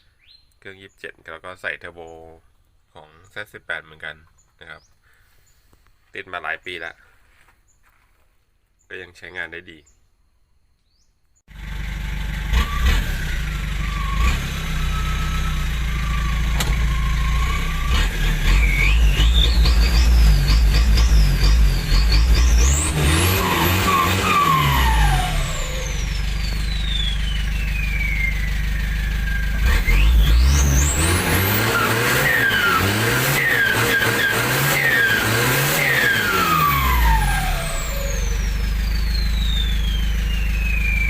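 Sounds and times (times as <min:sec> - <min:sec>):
diesel engine revving: 0:11.5 - 0:41.0
turbo whistle: 0:13.8 - 0:20.0, 0:22.1 - 0:41.0.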